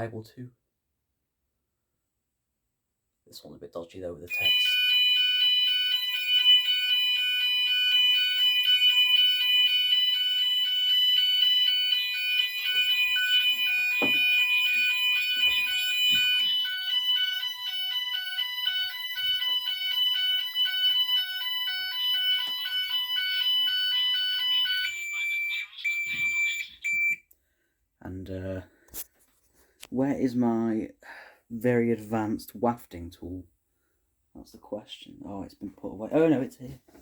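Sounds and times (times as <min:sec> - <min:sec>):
fire alarm sounders: 0:04.3 - 0:27.2.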